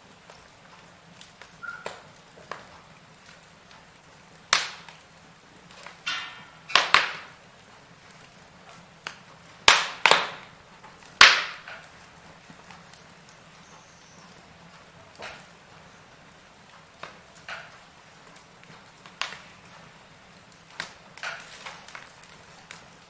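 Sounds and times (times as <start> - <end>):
wood fire crackling: 0.0 - 23.0
hissing whistle: 1.6 - 2.0
sharp pops: 4.5 - 5.0, 5.8 - 7.4, 9.0 - 10.5, 11.1 - 11.9.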